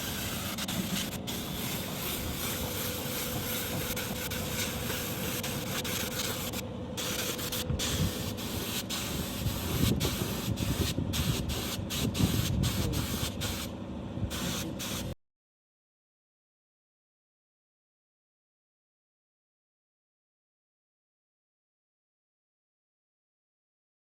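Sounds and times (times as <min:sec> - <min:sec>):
paint spray gun hissing: 0:00.0 - 0:13.7, 0:14.3 - 0:15.2
steady hum: 0:00.0 - 0:15.2.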